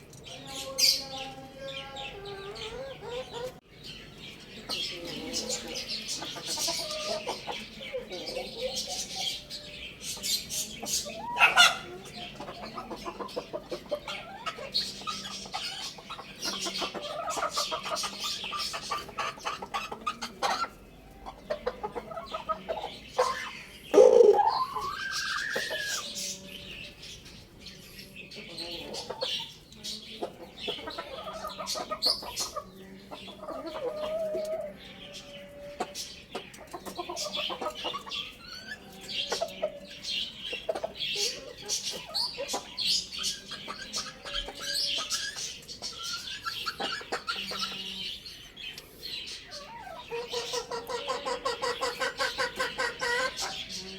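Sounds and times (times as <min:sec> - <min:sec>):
chickens clucking: 0:00.0 - 0:53.9
short high chirps: 0:24.0 - 0:24.5.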